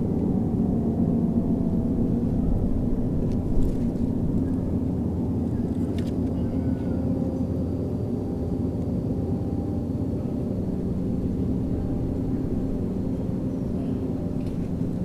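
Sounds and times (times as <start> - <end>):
low outdoor rumble: 0.0 - 8.4, 9.4 - 15.0.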